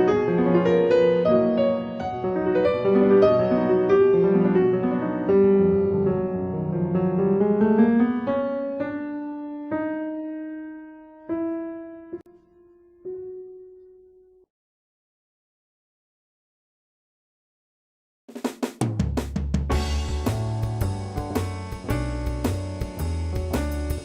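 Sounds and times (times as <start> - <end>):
piano music: 0.0 - 14.5, 19.7 - 24.0.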